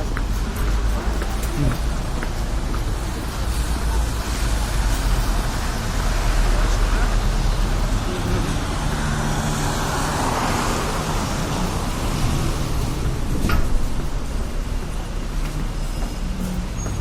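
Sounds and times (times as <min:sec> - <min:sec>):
street traffic noise: 0:00.0 - 0:17.0
vehicle passing: 0:03.6 - 0:17.0
wind buffeting microphone: 0:10.2 - 0:17.0.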